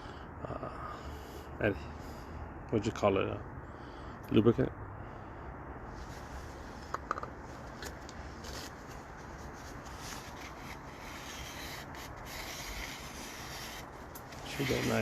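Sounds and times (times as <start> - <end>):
fingers rubbing: 9.7 - 15.0.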